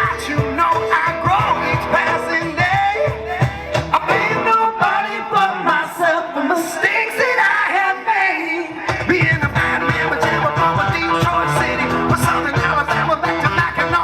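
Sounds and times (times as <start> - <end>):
bass and drums beat: 0.0 - 4.6, 8.9 - 14.0
live rock band playing: 0.0 - 5.4, 8.9 - 14.0
melodic line or voice: 0.0 - 5.7, 9.5 - 14.0.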